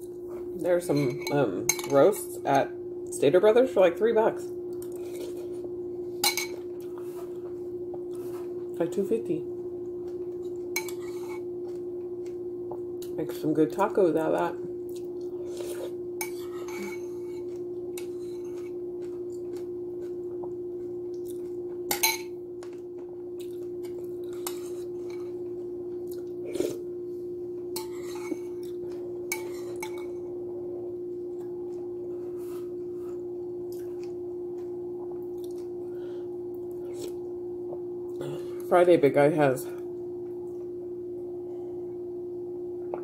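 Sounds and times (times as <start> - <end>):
low electrical hum: 0.0 - 43.0
dishes and cutlery clinking: 0.9 - 2.2, 6.2 - 6.6, 21.9 - 22.4, 29.3 - 30.2.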